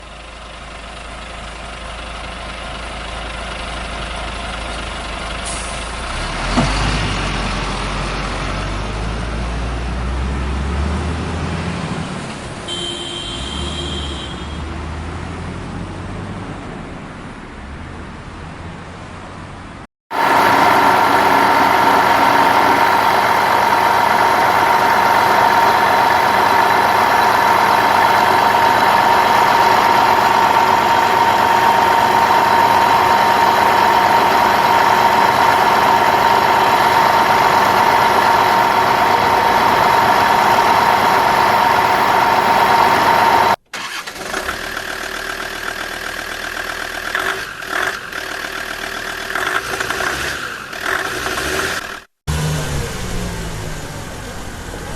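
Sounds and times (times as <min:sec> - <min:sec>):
quiet engine with rattle: 0:00.0 - 0:06.8, 0:44.6 - 0:50.0.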